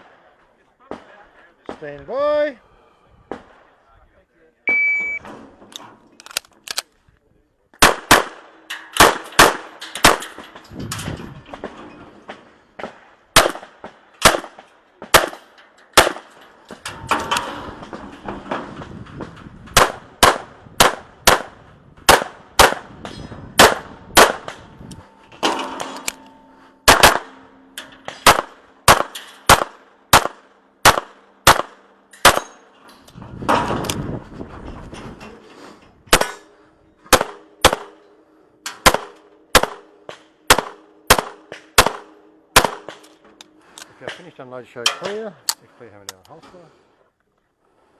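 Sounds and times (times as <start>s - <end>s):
metallic clang of steel targets: 8.1s - 34.2s, 36.1s - 45.6s
handgun shots: 26.9s - 27.3s.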